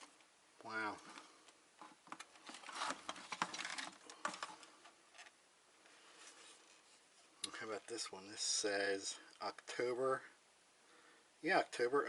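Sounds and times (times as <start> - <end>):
plastic parts clicking and rattling: 1.8 - 5.4.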